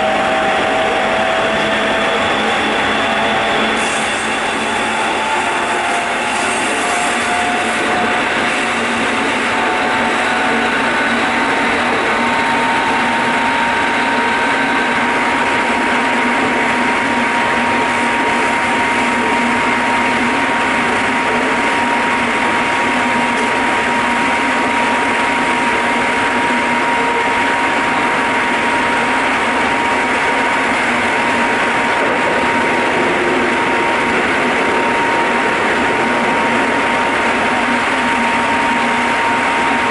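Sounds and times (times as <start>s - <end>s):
train motor whine: 0.0s - 39.9s
train wheels rolling on rail: 0.0s - 39.9s.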